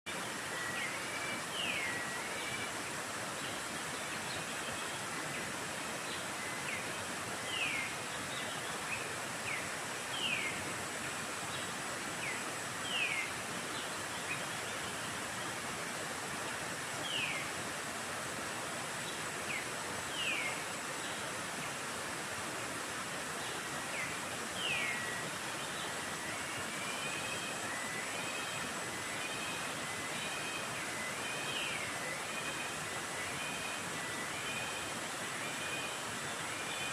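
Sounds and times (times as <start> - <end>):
steady rushing hiss: 0.1 - 36.9.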